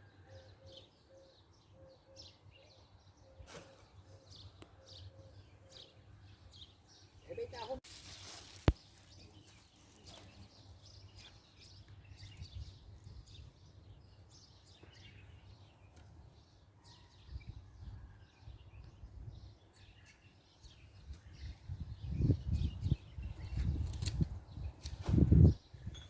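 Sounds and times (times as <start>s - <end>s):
birds chirping: 0.0s - 24.8s
wind rumble on microphone: 12.1s - 13.8s, 20.9s - 26.0s.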